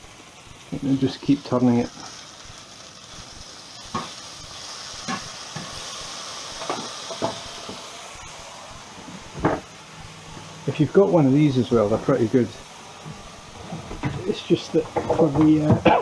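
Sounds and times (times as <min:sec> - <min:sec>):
chicken sizzling in oil: 0:00.0 - 0:16.0.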